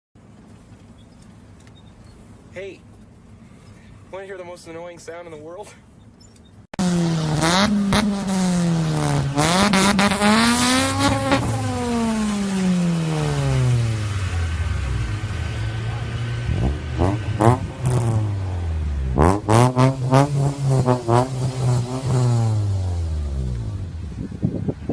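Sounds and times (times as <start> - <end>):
car exhaust revving raspy: 6.8 - 24.4.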